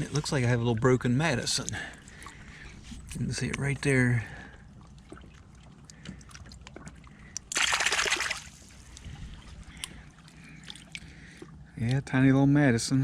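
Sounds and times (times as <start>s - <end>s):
water trickling and dripping: 0.0s - 12.1s
water splash: 6.2s - 9.0s.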